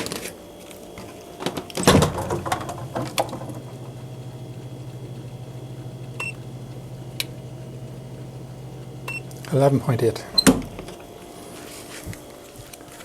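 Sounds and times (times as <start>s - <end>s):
low machine hum with flutter: 0.0s - 13.0s
handling knocks and clatter: 1.0s - 3.8s.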